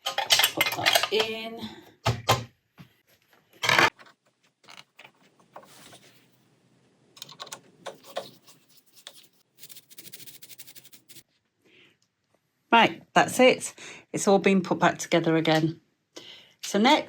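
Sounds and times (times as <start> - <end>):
machine parts clicking and knocking: 0.0 - 1.3.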